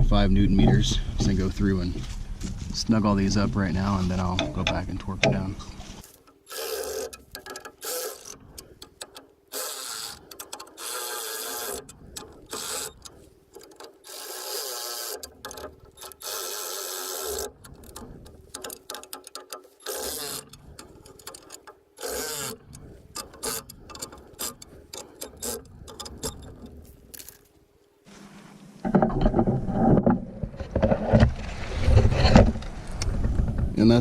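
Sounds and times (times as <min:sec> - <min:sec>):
ratchet wrench clicking: 0:06.2 - 0:27.4.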